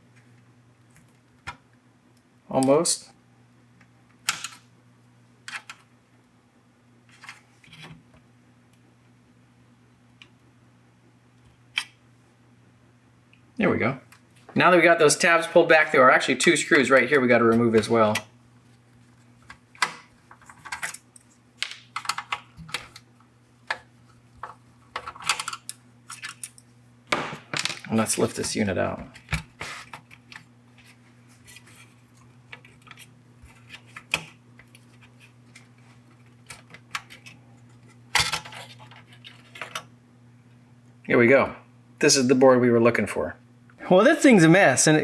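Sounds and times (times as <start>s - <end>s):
steady low hum: 0.0s - 45.0s
metal tabs clicking and scraping: 23.7s - 26.6s, 31.4s - 39.9s.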